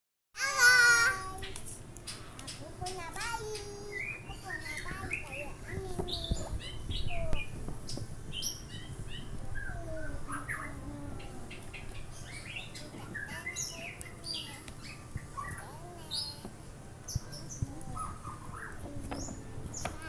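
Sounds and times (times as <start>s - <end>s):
birds chirping: 0.4s - 20.0s.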